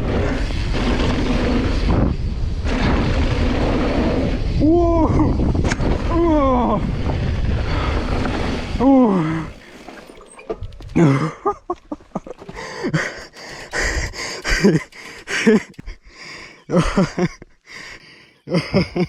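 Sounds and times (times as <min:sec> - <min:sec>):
bike clicking and knocking: 0:09.6 - 0:17.2
man breathing hard and grunting: 0:12.4 - 0:19.0.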